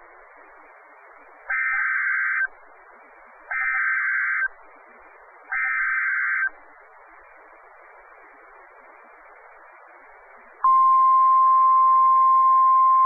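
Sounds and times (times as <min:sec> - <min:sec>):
radio hiss: 0:00.0 - 0:11.4
buzzing data bursts: 0:01.5 - 0:02.5, 0:03.5 - 0:04.5, 0:05.5 - 0:06.6.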